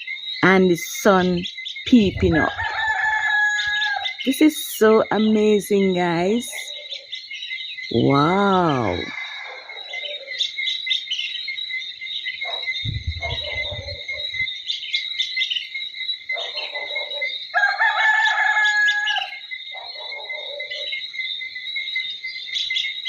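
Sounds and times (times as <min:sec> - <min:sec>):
birds chirping: 0:00.0 - 0:23.0
rooster crowing: 0:02.2 - 0:04.2, 0:08.7 - 0:10.5, 0:12.9 - 0:14.5, 0:16.4 - 0:21.0
low rumble: 0:12.8 - 0:14.5.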